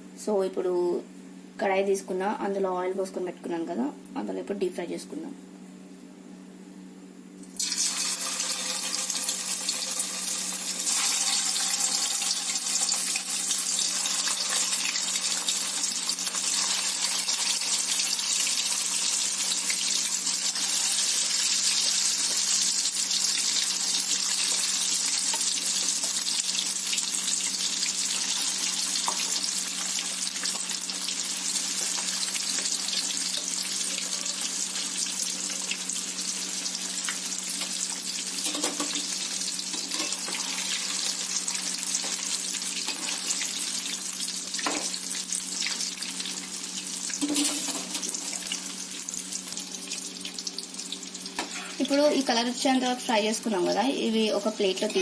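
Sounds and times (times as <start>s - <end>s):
fish sizzling in hot oil: 7.6s - 55.0s.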